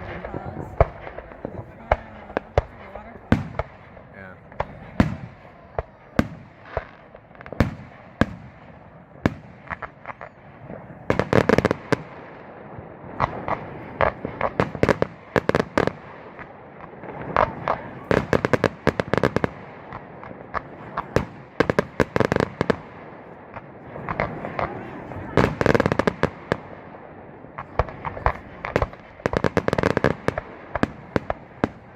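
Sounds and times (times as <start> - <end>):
fireworks bangs and crackling: 0.0 - 31.9.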